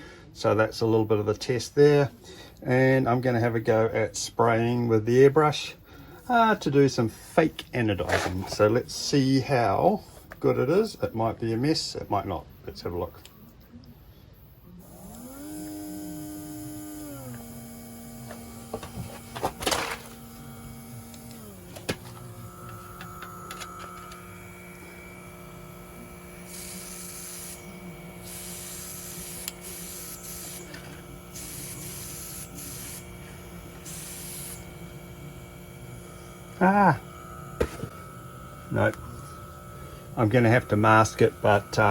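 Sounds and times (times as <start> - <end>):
compressor humming: 14.8 - 41.9
airbrush hissing air: 20.2 - 41.9.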